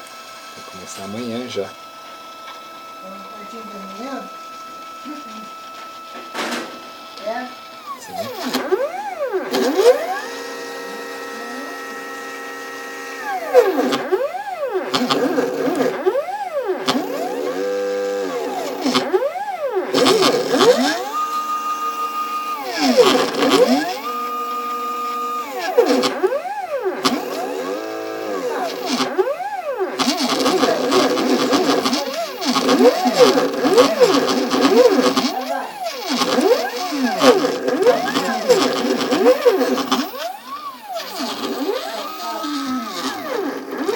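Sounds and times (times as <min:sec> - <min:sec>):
stepper motors whining: 0:00.5 - 0:43.9.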